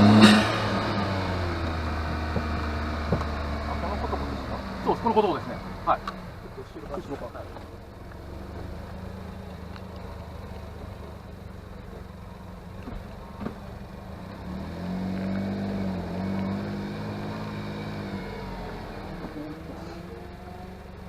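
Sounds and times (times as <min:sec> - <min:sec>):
car engine running: 0:00.0 - 0:21.0
sharp knock: 0:00.1 - 0:01.0.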